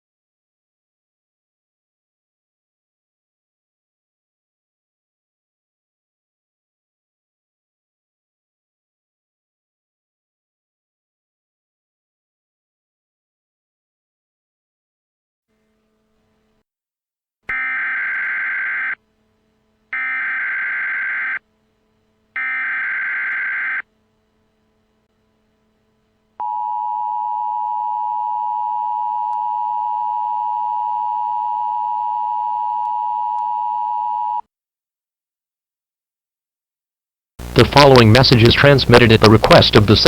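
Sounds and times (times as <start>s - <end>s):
warbling data tones: 20.0s - 21.4s, 22.4s - 23.8s.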